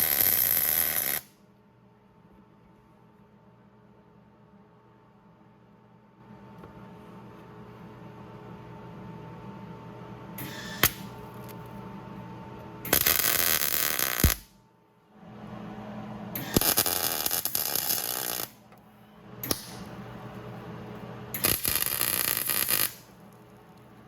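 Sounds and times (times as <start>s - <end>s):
electric arc welding: 0.0s - 1.3s, 12.9s - 14.6s, 16.4s - 18.6s, 21.3s - 23.1s
steady low hum: 0.0s - 24.0s.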